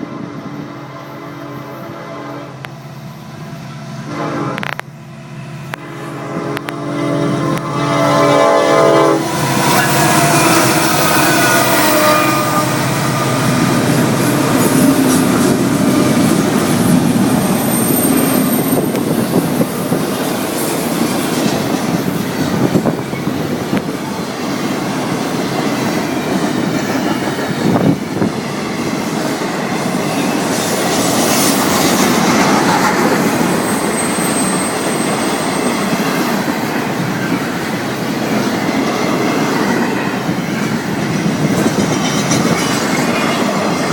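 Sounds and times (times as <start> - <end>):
train horn: 0.0 - 16.2
freight train rumbling on rails: 0.0 - 43.9
wheels squealing: 9.3 - 19.4, 29.9 - 37.6.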